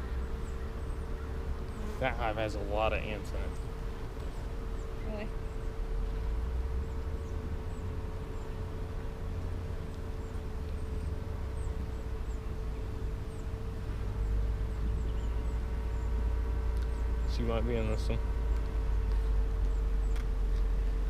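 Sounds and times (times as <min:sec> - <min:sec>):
honeybees humming: 0:00.0 - 0:21.0
faint bird chirps: 0:09.9 - 0:21.0.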